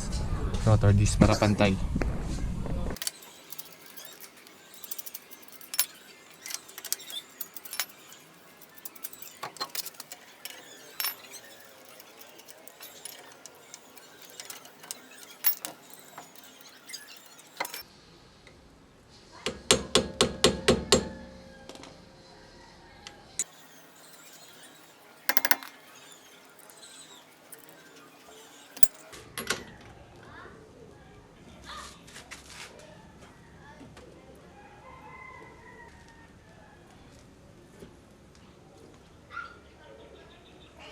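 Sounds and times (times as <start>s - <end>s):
tools clicking and clinking: 3.0s - 17.8s, 23.4s - 29.1s.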